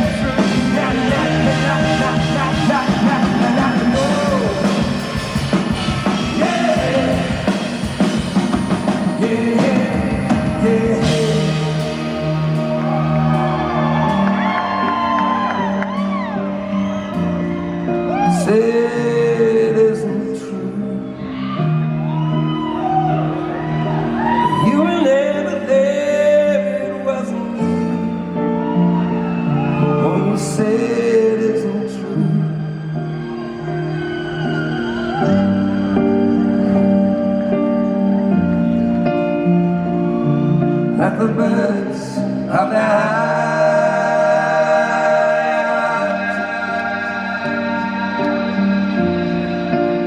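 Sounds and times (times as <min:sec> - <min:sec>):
wordless gliding vocal: 0:00.0 - 0:14.0, 0:40.9 - 0:50.0
drum kit keeping time: 0:00.0 - 0:18.4
live band music: 0:00.0 - 0:19.6, 0:27.2 - 0:50.0.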